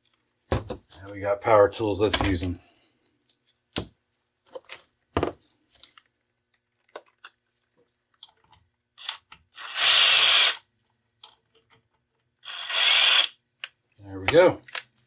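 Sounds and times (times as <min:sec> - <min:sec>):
power drill running: 0:09.6 - 0:10.6, 0:12.4 - 0:13.4.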